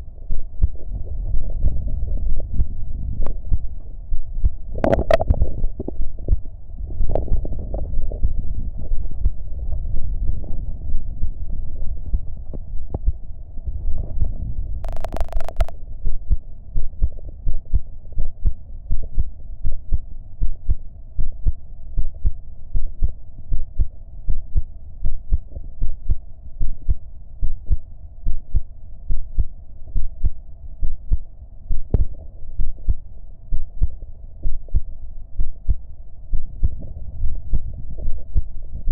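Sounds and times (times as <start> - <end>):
heartbeat thumps: 0.3 - 12.3, 16.3 - 38.5
brief crackle: 4.8 - 5.4, 14.8 - 15.7.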